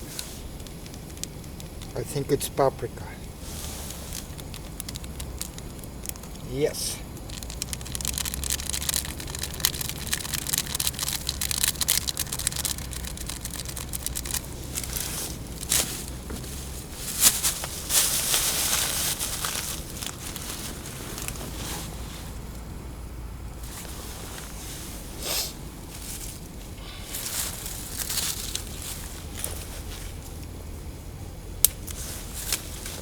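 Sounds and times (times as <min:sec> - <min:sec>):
crackling and rustling: 0:00.0 - 0:33.0
gas stove rumble: 0:00.0 - 0:33.0.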